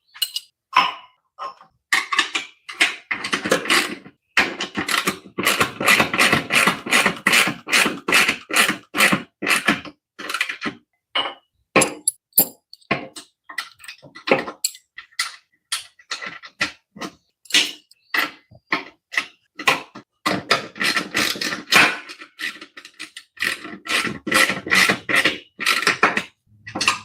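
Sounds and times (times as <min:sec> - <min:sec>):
wrench clicking and scraping on metal: 0:00.1 - 0:00.5, 0:11.8 - 0:12.9, 0:13.6 - 0:16.6.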